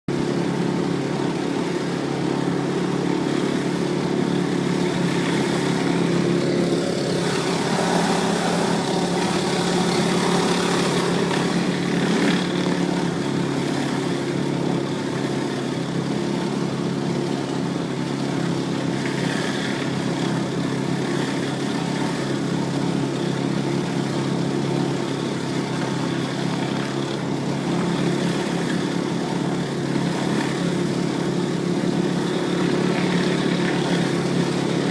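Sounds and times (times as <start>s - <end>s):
small petrol engine running: 0.1s - 34.9s.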